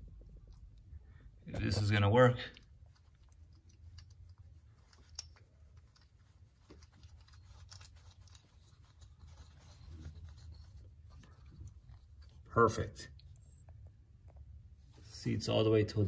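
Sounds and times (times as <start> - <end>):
bolt clicking and scraping: 3.0 - 9.0.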